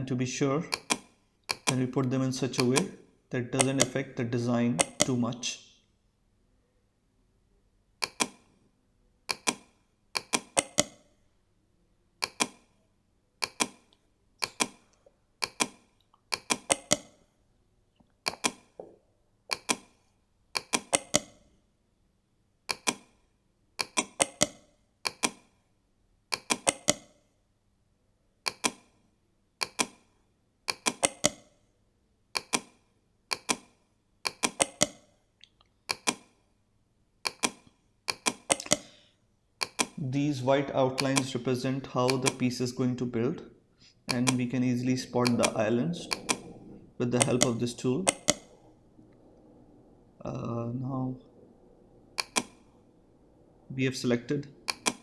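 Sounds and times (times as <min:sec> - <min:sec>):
computer mouse buttons clicking: 0:00.7 - 0:03.0, 0:03.6 - 0:04.0, 0:04.8 - 0:05.4, 0:08.0 - 0:08.6, 0:09.3 - 0:11.2, 0:12.2 - 0:12.8, 0:13.4 - 0:17.3, 0:18.2 - 0:21.6, 0:22.7 - 0:23.2, 0:23.8 - 0:25.6, 0:26.3 - 0:27.2, 0:28.4 - 0:29.0, 0:29.6 - 0:31.6, 0:32.4 - 0:35.2, 0:35.9 - 0:36.4, 0:37.2 - 0:39.0, 0:39.6 - 0:40.0, 0:40.9 - 0:41.4, 0:42.0 - 0:42.5, 0:44.0 - 0:44.5, 0:45.2 - 0:49.2, 0:52.1 - 0:52.8, 0:54.6 - 0:55.0.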